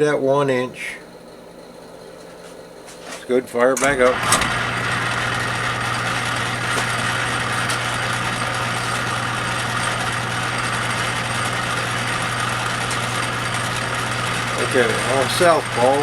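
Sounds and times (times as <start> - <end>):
lathe motor humming: 3.8 - 16.0.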